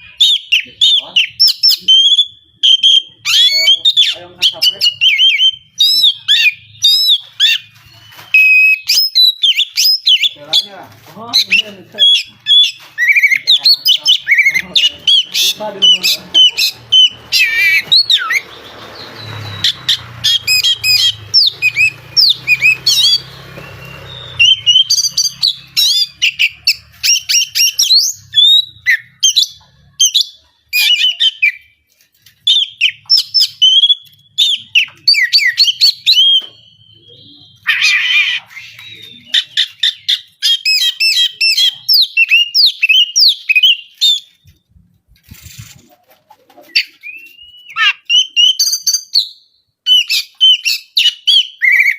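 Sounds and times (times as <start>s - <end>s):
harsh buzzy bird call: 0.0s - 31.8s, 32.5s - 44.3s
songbird singing fast chirps: 11.4s - 31.6s.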